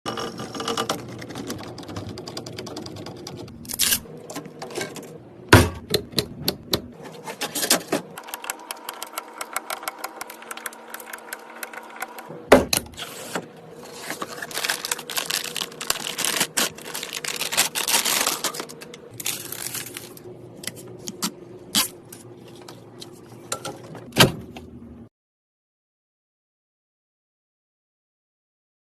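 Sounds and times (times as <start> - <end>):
computer parts clicking and clattering: 0.1 - 5.1.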